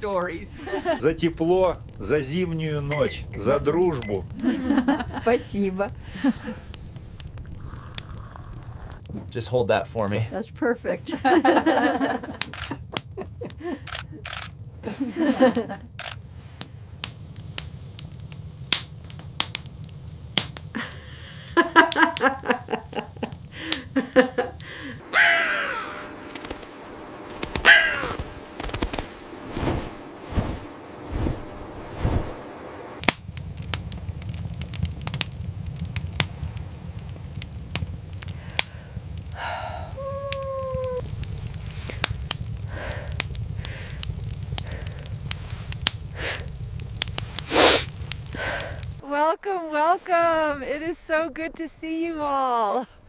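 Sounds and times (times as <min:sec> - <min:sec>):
sharp crackling pops: 0:00.0 - 0:10.2, 0:11.2 - 0:50.6
steady low rumble: 0:00.0 - 0:53.0
short held tone: 0:02.9 - 0:04.2
harsh falling animal calls: 0:25.0 - 0:30.9, 0:39.9 - 0:41.1.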